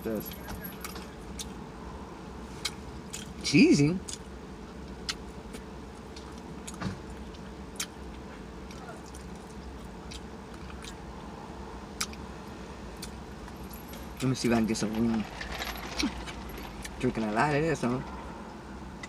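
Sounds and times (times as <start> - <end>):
steady low hum: 0.0 - 19.0
person chewing food: 2.5 - 3.4, 4.1 - 11.3, 12.0 - 12.2, 13.0 - 13.6
wet mouth smacks and clicks: 6.2 - 8.0, 12.0 - 12.2.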